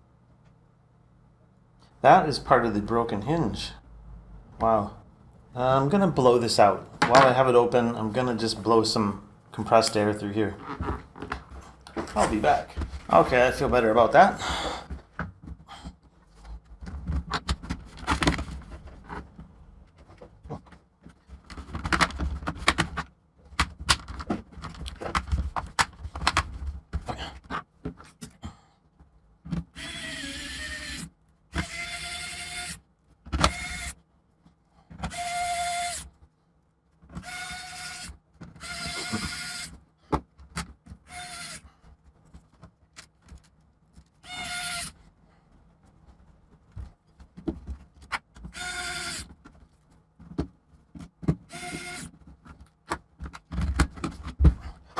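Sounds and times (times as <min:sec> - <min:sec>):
laptop parts clicking and knocking: 0:21.4 - 0:26.6
electric screwdriver whining: 0:29.8 - 0:32.8, 0:33.4 - 0:34.0, 0:35.1 - 0:36.1, 0:37.2 - 0:39.8, 0:41.1 - 0:41.6, 0:44.2 - 0:44.9, 0:48.5 - 0:49.3, 0:51.5 - 0:52.1.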